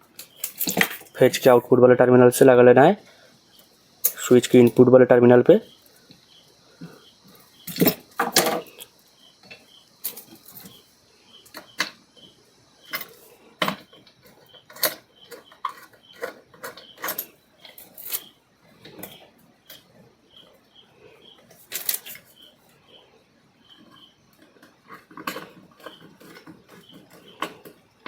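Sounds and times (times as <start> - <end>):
clicks and knocks of tools: 0.2 - 1.2, 7.7 - 10.8, 12.9 - 19.9, 21.5 - 22.3, 23.8 - 27.9.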